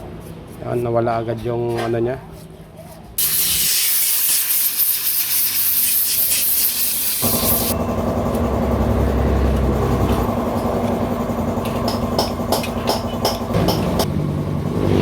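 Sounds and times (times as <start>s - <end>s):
aerosol spray hissing: 3.2s - 7.8s.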